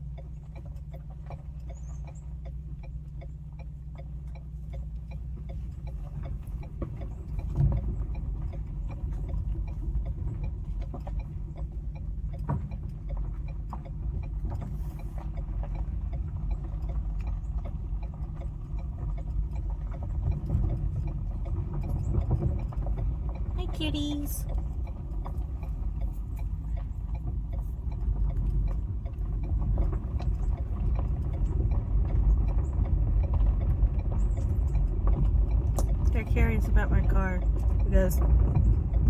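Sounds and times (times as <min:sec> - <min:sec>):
car engine hum in cabin: 0:00.0 - 0:39.0
light ticking: 0:00.0 - 0:39.0.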